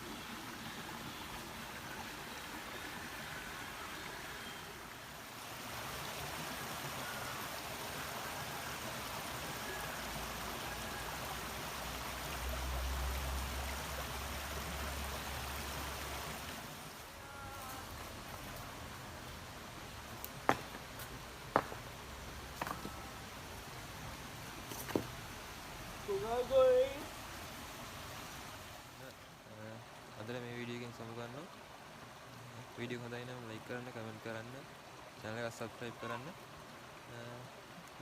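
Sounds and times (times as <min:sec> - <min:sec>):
river water flowing: 0:00.0 - 0:38.0.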